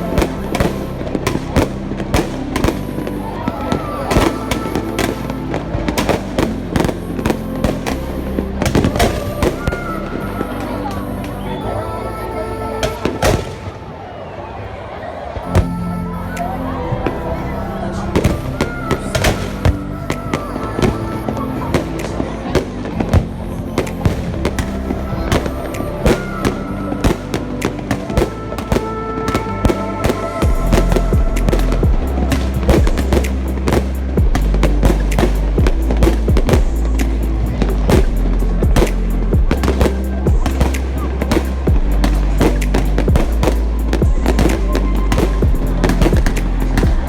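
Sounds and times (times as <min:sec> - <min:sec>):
background music: 0:00.0 - 0:47.0
fireworks bangs and crackles: 0:00.1 - 0:09.9, 0:25.3 - 0:47.0.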